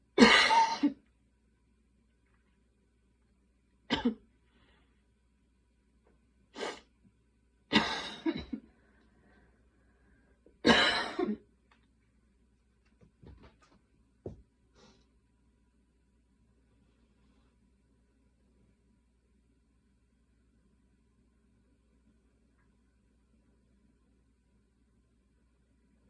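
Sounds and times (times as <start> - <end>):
person coughing: 0.2 - 1.0, 3.9 - 4.2, 7.7 - 8.7, 10.6 - 11.4.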